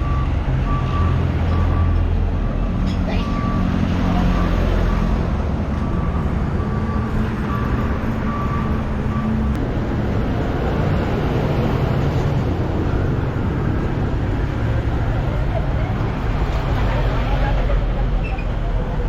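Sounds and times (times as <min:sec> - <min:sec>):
reversing alarm beeping: 0:00.0 - 0:09.6.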